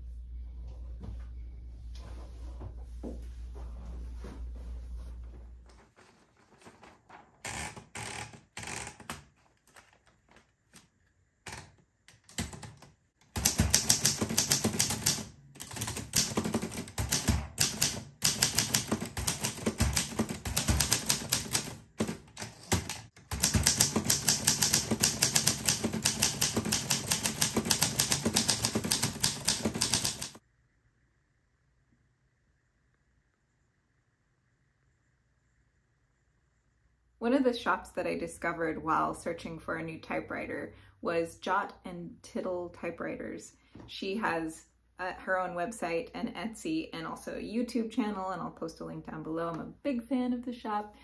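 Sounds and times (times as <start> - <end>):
manual typewriter typing: 6.5 - 10.0, 11.4 - 30.4.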